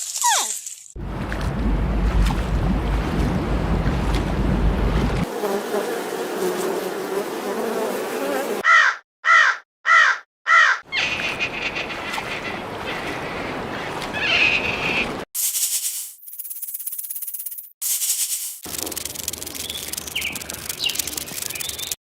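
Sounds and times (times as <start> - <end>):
crow cawing: 8.6 - 10.9.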